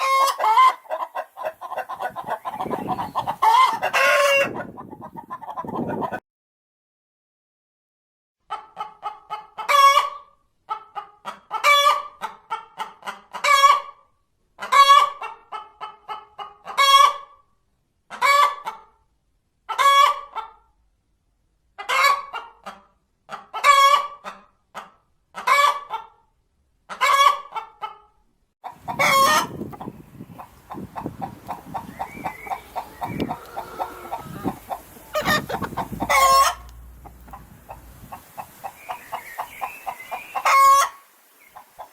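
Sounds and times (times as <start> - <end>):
hen cackling: 0.0 - 6.2, 28.6 - 41.9.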